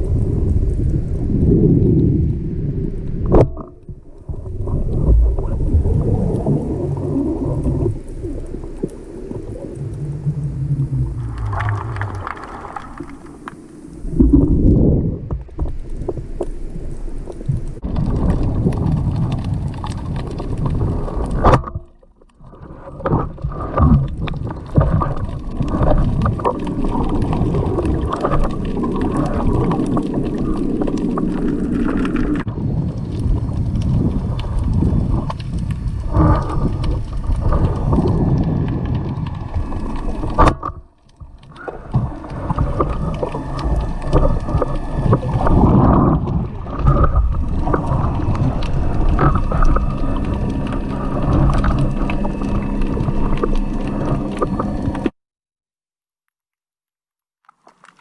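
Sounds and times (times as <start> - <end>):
wind on microphone: 0.0 - 21.9, 23.2 - 40.9, 41.5 - 55.1
water noise: 0.0 - 55.2, 57.4 - 58.0
motorboat engine: 41.8 - 55.1.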